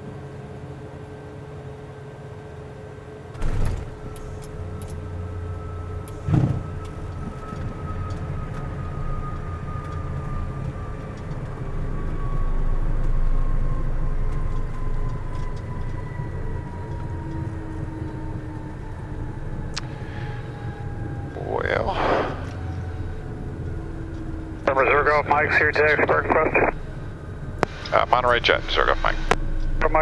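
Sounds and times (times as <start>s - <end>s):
jet engine whine: 0.0s - 30.0s
rumbling tyre and airframe noise: 3.3s - 12.4s.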